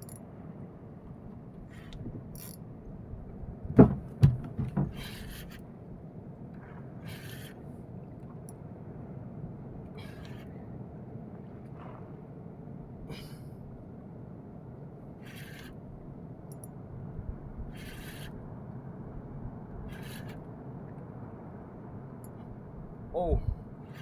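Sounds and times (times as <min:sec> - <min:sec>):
wind rumble on microphone: 0:00.3 - 0:07.0, 0:16.9 - 0:24.0.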